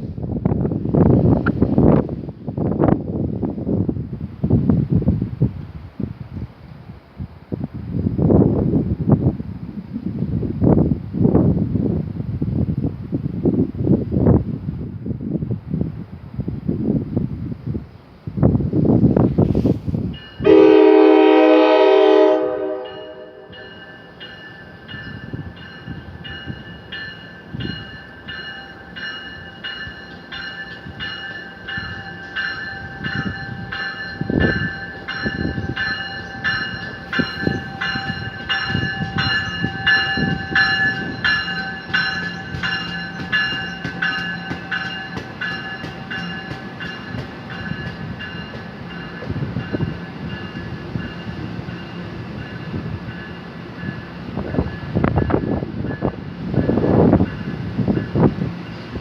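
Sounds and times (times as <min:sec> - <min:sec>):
train horn: 0:20.4 - 0:23.8
bell ringing: 0:22.9 - 0:50.6
train wheel clacks: 0:24.2 - 0:58.8.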